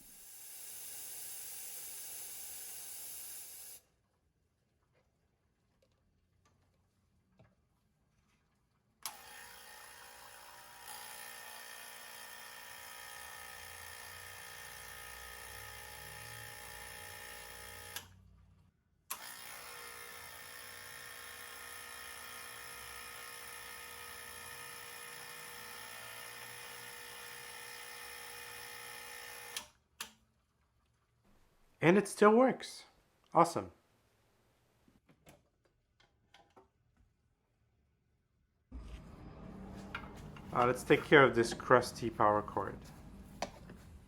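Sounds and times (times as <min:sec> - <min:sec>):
espresso machine pump buzzing: 0:00.0 - 0:03.8, 0:09.1 - 0:18.1, 0:19.1 - 0:29.7.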